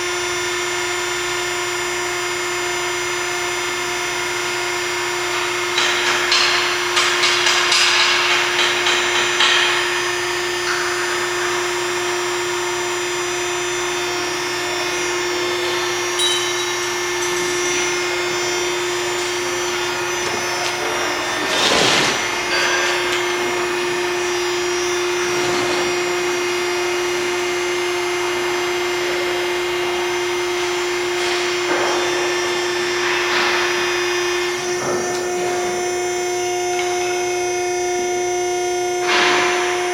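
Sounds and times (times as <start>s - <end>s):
machine whining and humming: 0.0s - 39.9s.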